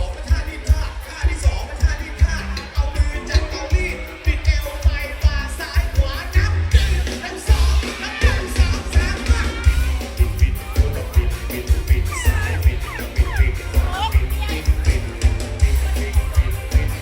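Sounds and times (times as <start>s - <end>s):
live band playing: 0.1s - 17.0s
person singing: 11.6s - 14.7s.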